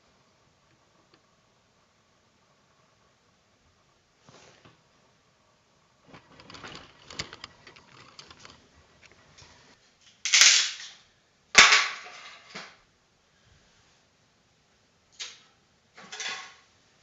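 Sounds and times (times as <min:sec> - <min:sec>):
small hard objects rattling: 0:06.1 - 0:09.4.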